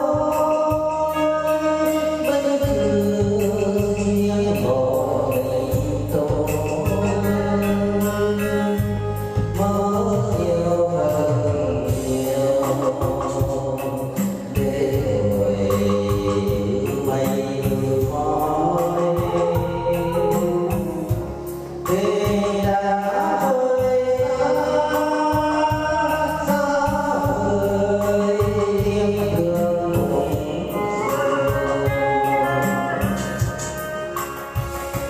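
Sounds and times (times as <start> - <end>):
musical accompaniment: 0.0 - 35.0
person singing long notes: 0.0 - 35.0.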